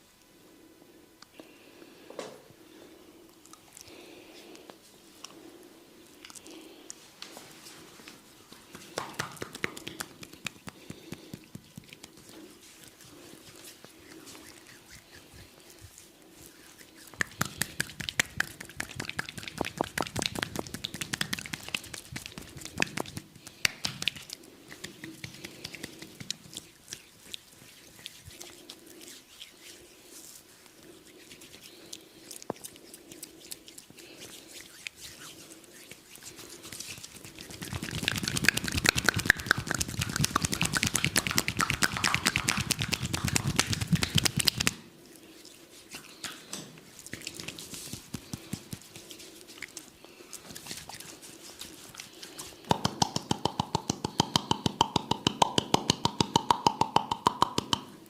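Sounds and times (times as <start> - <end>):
hands slapping skin in massage: 8.5 - 13.7, 17.1 - 28.7, 34.6 - 44.8, 45.9 - 49.9, 50.5 - 58.0.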